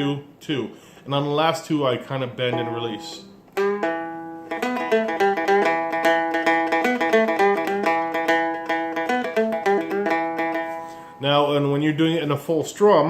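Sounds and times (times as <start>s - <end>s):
dulcimer picked melody over drone: 2.5s - 10.5s.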